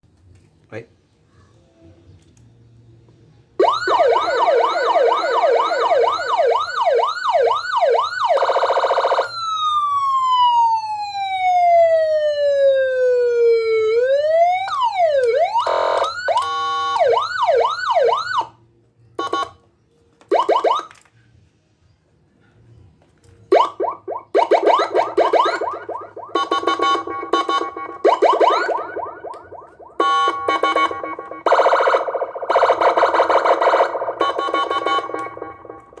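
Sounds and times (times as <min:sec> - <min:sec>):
electronic siren: 0:03.6 - 0:18.6, 0:19.2 - 0:19.5, 0:20.3 - 0:21.0, 0:23.5 - 0:36.0.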